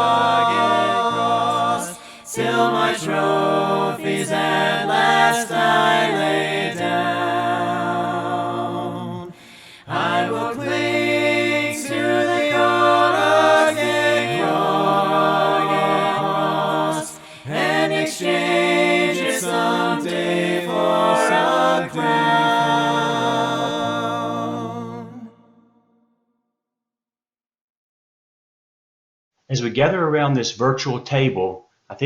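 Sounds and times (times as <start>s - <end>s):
voices singing hymn in harmony: 0.0s - 25.6s.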